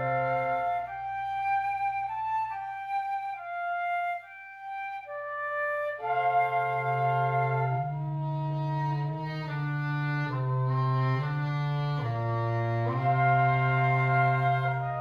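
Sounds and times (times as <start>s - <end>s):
wind quintet playing slow passage: 0.0s - 15.0s.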